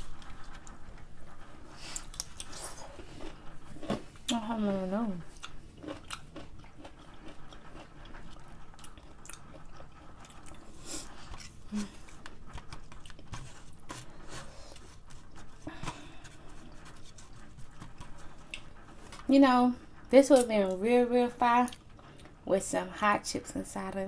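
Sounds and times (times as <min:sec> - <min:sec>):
chewing crunchy pickles: 0:01.9 - 0:13.3.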